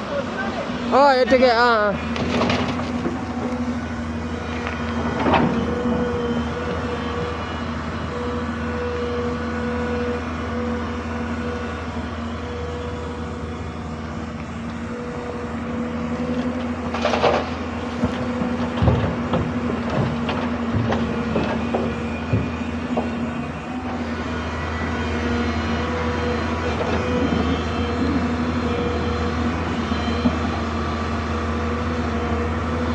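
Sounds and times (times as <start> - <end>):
excavator diesel engine running: 0.0 - 32.9.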